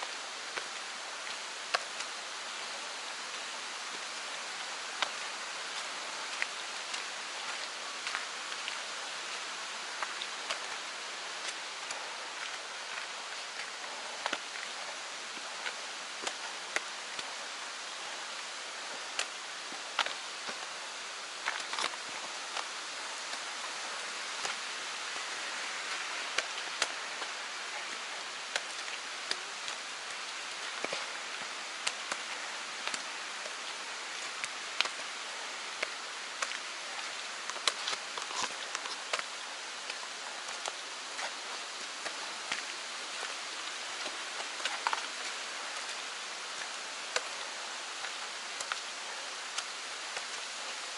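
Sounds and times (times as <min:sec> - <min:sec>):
mountain stream rushing: 0:00.0 - 0:50.9.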